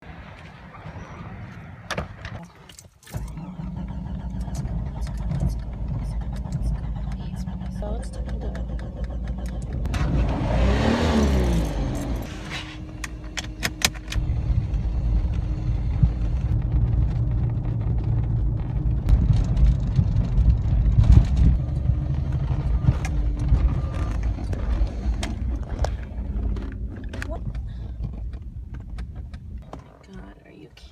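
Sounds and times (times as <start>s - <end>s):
car engine cranking: 1.9s - 30.8s
sharp clicks: 4.2s - 9.9s.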